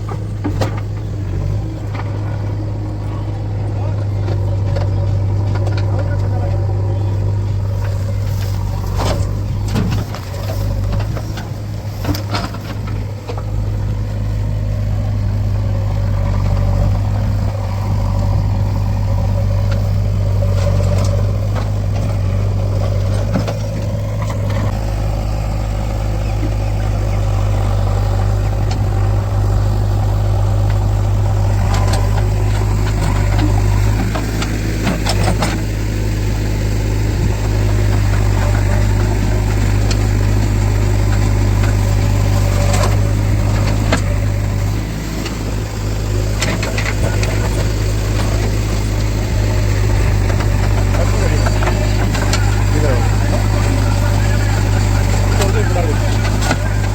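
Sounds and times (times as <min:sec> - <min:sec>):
knocks and clanks: 0:00.0 - 0:25.2, 0:26.3 - 0:35.8, 0:37.2 - 0:56.9
diesel engine droning: 0:00.0 - 0:56.9.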